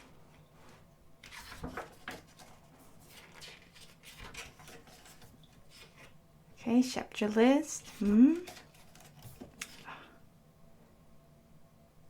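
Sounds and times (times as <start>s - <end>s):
book pages turning: 1.2s - 6.2s, 7.8s - 9.9s.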